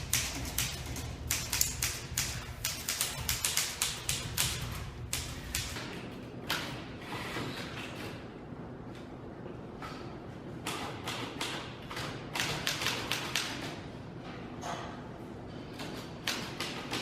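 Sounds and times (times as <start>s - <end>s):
typewriter keys striking: 0.0s - 5.8s, 11.1s - 13.8s.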